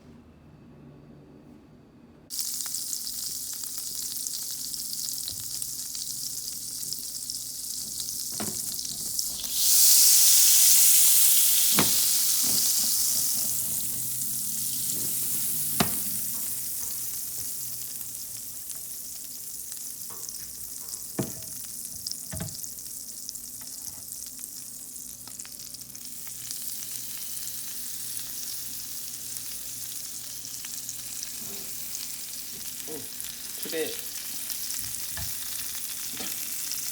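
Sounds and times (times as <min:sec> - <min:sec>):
vegetables sizzling in oil: 0:02.3 - 0:36.9
utensil knocking against pan: 0:20.1 - 0:21.5.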